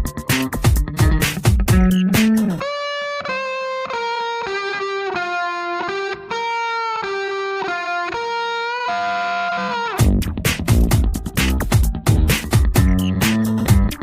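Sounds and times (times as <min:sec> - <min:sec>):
drums: 0:00.0 - 0:02.6, 0:10.0 - 0:14.0
distorted electric guitar melody: 0:00.0 - 0:14.0.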